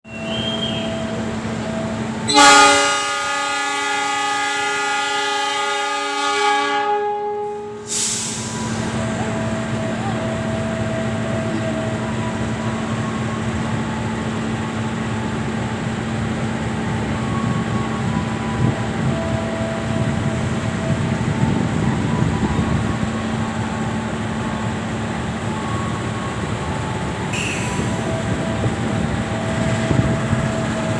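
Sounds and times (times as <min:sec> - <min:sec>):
train horn long blast: 0:00.1 - 0:08.5, 0:27.3 - 0:30.5
train rumbling: 0:00.1 - 0:30.9.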